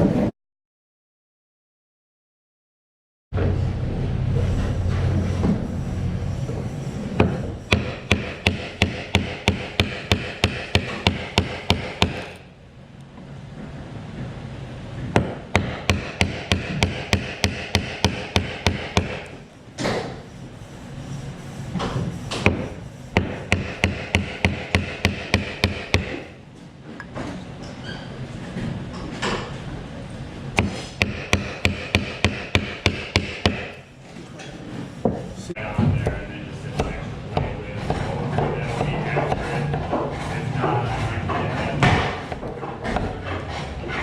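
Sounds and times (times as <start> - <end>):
hammering on wood: 7.2 - 12.4, 15.1 - 19.3, 22.3 - 26.3, 30.6 - 33.8, 35.8 - 43.4.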